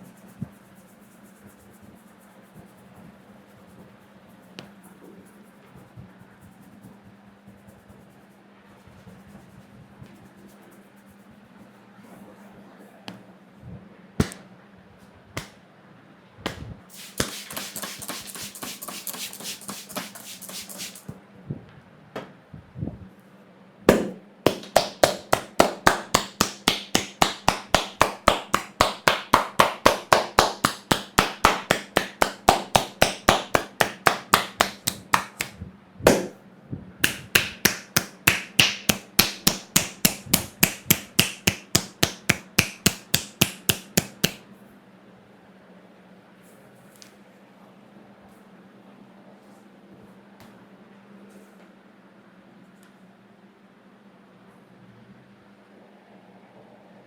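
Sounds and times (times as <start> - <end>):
hands striking head in massage: 14.2 - 14.4, 15.4 - 15.6, 16.5 - 21.0, 23.9 - 36.4, 37.0 - 44.4
hair rubbing: 16.9 - 21.1, 24.5 - 35.5, 37.1 - 44.4.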